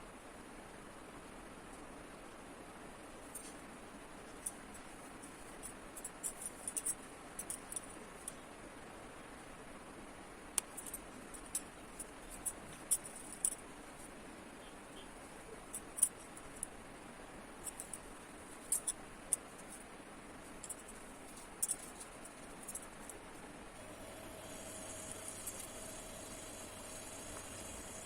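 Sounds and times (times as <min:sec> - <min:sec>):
steady low hiss: 0:00.0 - 0:28.0
small irregular clicks: 0:04.2 - 0:08.4, 0:10.5 - 0:16.8, 0:17.6 - 0:19.8, 0:20.4 - 0:28.0.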